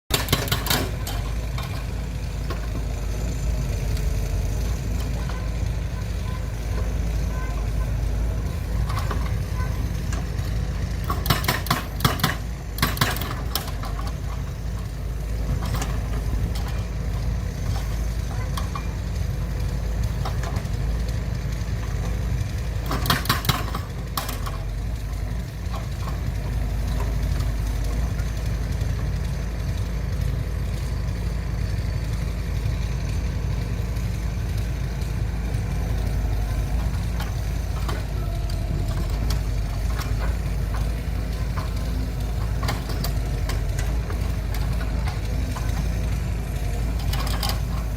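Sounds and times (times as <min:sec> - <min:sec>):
low mechanical drone: 0:00.2 - 0:47.9
sharp clattering clicks: 0:22.8 - 0:24.6.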